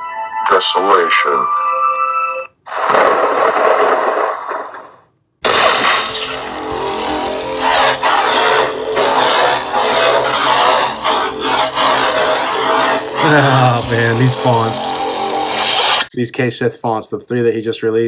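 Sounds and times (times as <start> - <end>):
lightsaber igniting: 2.7 - 16.1
crackling lightsaber hum: 2.8 - 16.1.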